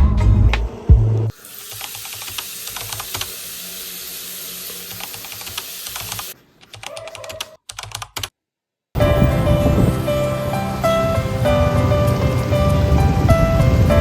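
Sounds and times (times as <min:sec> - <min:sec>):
steady hiss: 0:01.3 - 0:06.4
rapid light clicks: 0:04.9 - 0:08.3.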